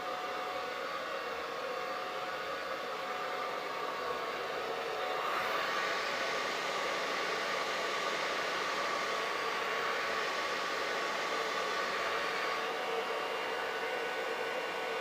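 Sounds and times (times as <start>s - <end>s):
hair dryer running: 0.0s - 15.0s.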